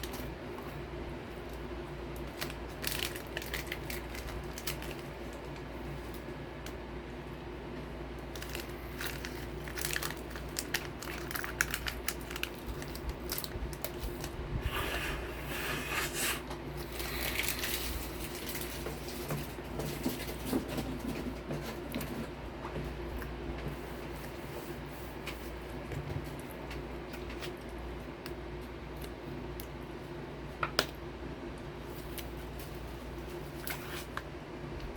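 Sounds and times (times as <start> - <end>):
crunching and chewing crackers: 0.0 - 6.8, 8.2 - 14.4, 16.8 - 22.3, 25.8 - 30.1
snack wrapper crinkling and tearing: 2.1 - 6.2, 8.2 - 14.4, 16.8 - 19.3.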